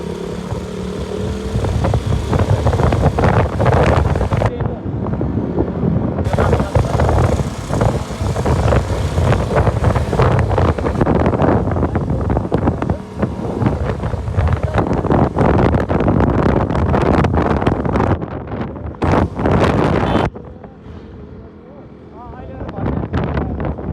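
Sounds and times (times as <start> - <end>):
motorcycle engine running: 0.0 - 4.5, 6.3 - 18.0
wind buffeting microphone: 0.0 - 21.3, 22.4 - 23.9.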